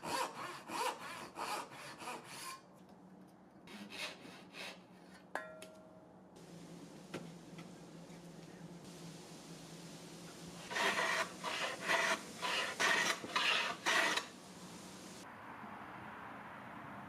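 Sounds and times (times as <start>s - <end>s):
hand tool scraping wood: 0.0s - 2.6s, 10.6s - 14.4s.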